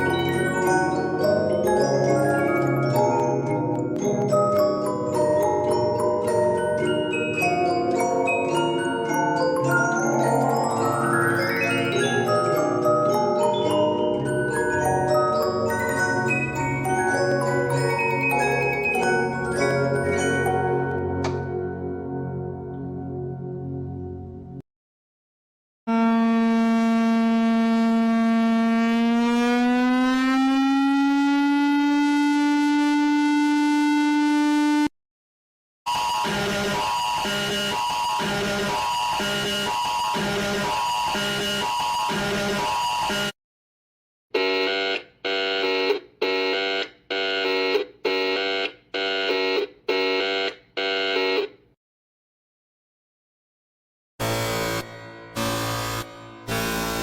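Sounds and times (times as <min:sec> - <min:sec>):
electronic alarm tone: 0:35.9 - 0:43.4.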